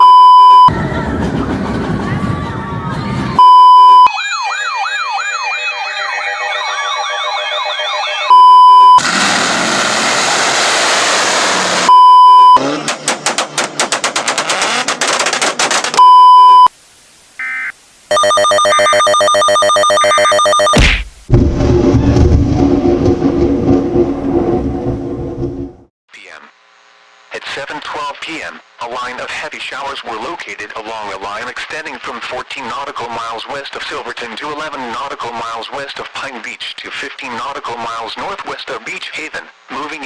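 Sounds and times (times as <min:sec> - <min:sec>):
very loud beep: 0:00.0 - 0:00.7, 0:03.4 - 0:04.1, 0:07.8 - 0:09.0, 0:11.9 - 0:12.6, 0:16.0 - 0:16.7, 0:17.4 - 0:21.1
siren-like electronic wail: 0:03.9 - 0:09.2
rapid rattle of clicks: 0:12.8 - 0:16.0
static hiss: 0:16.7 - 0:18.2.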